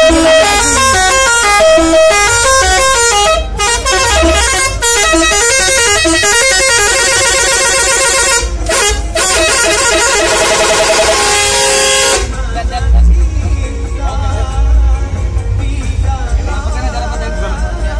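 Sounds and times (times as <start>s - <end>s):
musical air horn melody: 0.0s - 12.4s.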